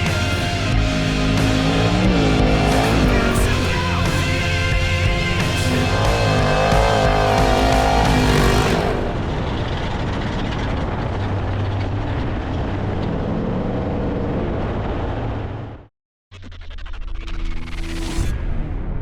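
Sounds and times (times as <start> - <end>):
rock music: 0.0 - 9.3
truck engine running: 0.0 - 13.8.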